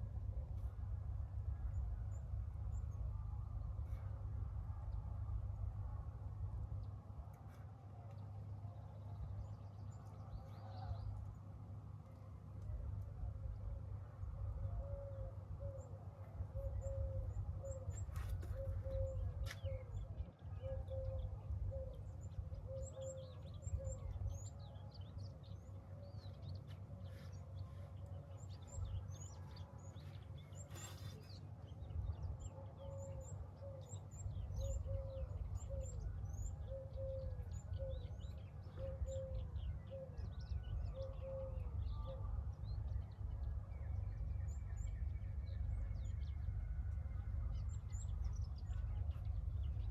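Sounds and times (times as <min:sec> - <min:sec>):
steady low rumble: 0:00.0 - 0:49.9.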